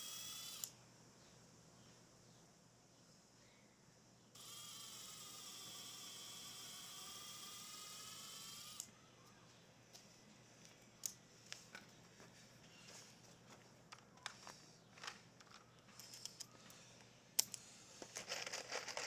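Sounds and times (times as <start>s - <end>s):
power tool motor whining: 4.4s - 8.9s.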